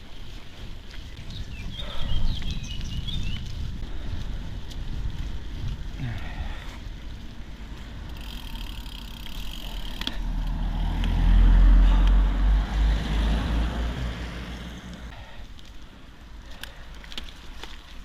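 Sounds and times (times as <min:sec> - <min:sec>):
motor vehicle passing: 0:07.2 - 0:15.2.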